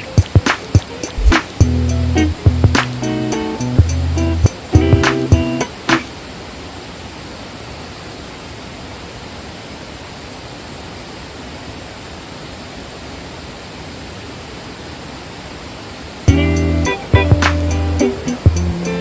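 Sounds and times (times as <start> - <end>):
waterfall rushing over rocks: 0.0 - 1.7, 4.5 - 16.3.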